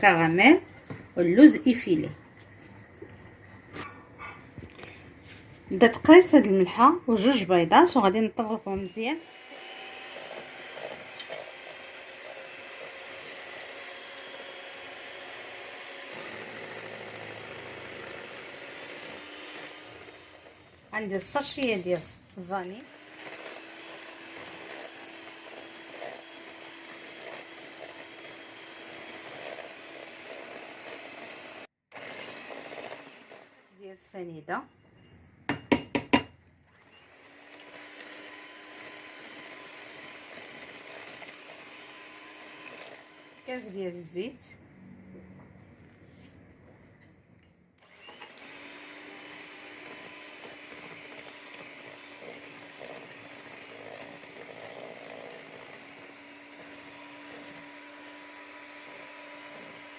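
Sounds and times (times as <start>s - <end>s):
electric mixer beating eggs: 7.8s - 21.8s, 22.5s - 33.6s, 36.8s - 43.9s, 47.8s - 59.9s.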